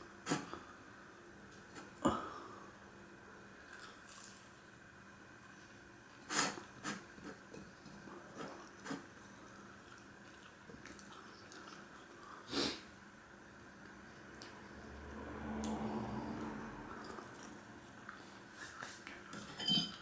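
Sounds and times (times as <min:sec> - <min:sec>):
chewing and mouth noises: 0:03.6 - 0:04.6, 0:07.8 - 0:12.4, 0:16.4 - 0:19.2.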